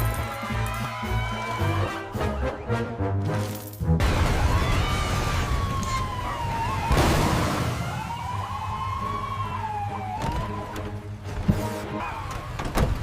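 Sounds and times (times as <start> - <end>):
police siren wailing: 4.3 - 12.6.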